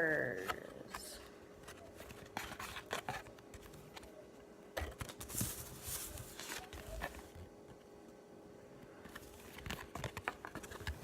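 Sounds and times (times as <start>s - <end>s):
trading cards clicking and rustling: 4.8s - 7.4s, 9.0s - 11.0s.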